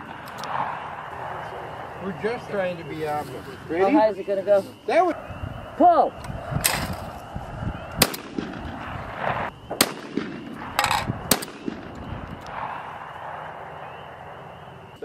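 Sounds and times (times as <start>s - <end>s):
shotgun shots: 8.0s - 14.0s.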